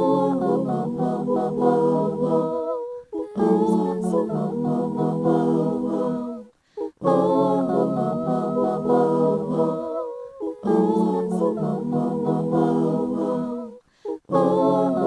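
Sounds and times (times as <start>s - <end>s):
a cappella harmony singing: 0.0s - 15.0s
singers breathing: 6.5s - 7.0s, 13.8s - 14.3s.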